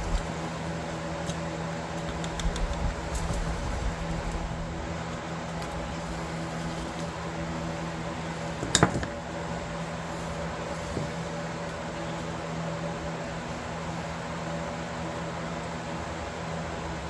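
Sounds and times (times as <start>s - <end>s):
steady mechanical hum: 0.0s - 17.0s.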